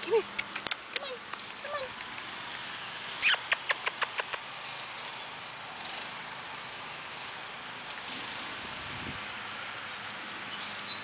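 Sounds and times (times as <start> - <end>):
outdoor background noise: 0.0 - 11.0
person tongue clicking: 3.2 - 4.4.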